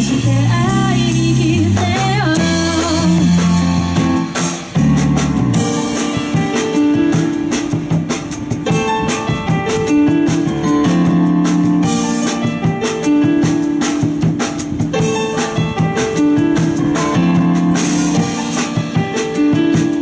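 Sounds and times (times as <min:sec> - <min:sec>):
guitar and bass: 0:00.0 - 0:08.7, 0:16.5 - 0:18.4
drum kit strikes: 0:00.0 - 0:20.0.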